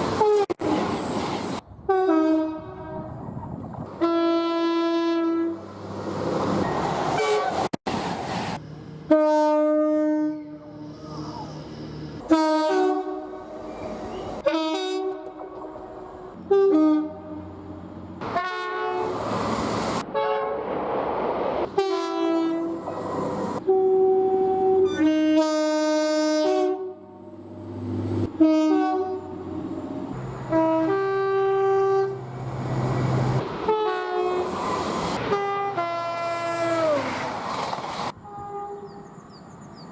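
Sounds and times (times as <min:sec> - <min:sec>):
passing trains rumble: 0:00.0 - 0:39.9
train two-tone horn blasts: 0:00.2 - 0:00.6, 0:01.9 - 0:03.2, 0:03.9 - 0:05.7, 0:07.2 - 0:07.6, 0:09.1 - 0:11.0, 0:12.2 - 0:19.3, 0:20.0 - 0:20.7, 0:21.7 - 0:27.2, 0:28.2 - 0:29.6, 0:30.4 - 0:32.2, 0:33.6 - 0:37.1, 0:38.1 - 0:39.2.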